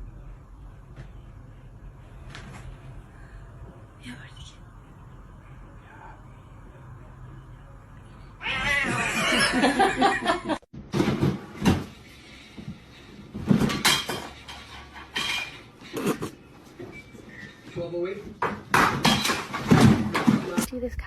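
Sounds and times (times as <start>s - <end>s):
cat crying out loudly: 8.4s - 9.4s.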